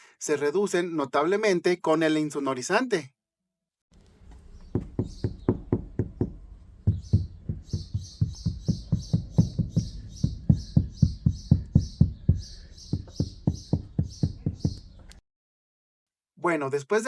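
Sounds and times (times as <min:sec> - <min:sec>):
heavy low drum beat: 0:04.4 - 0:15.0.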